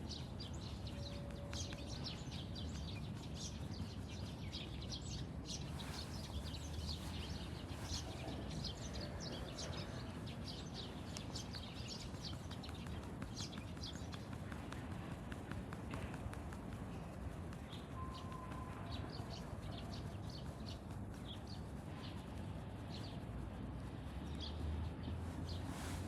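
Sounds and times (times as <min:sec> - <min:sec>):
low outdoor rumble: 0:00.0 - 0:26.0
small birds chirping: 0:00.0 - 0:26.0.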